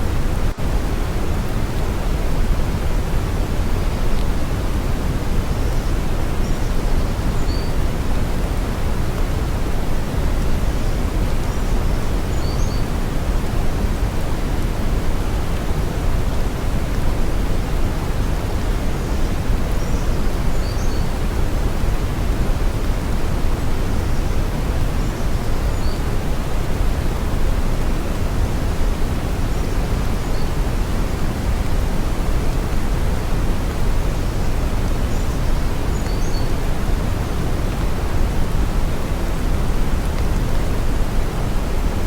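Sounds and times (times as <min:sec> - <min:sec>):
brown noise deep hiss: 0:00.0 - 0:42.0.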